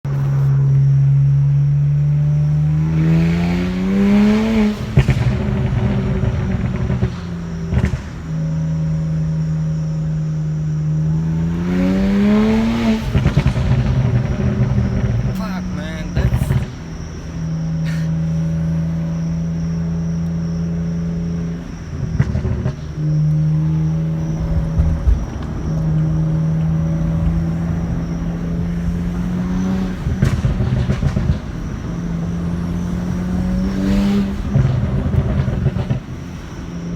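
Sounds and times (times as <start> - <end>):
car engine idling and revving: 0.0 - 36.9
exhaust crackles and pops: 4.7 - 9.2, 12.3 - 36.9.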